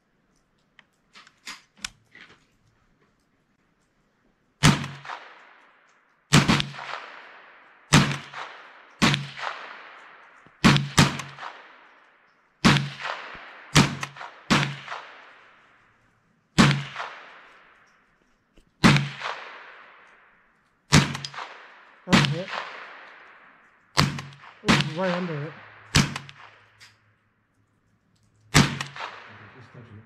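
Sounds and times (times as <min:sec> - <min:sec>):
rifle shots echoing: 0:04.6 - 0:18.1, 0:18.8 - 0:27.1, 0:28.5 - 0:30.0.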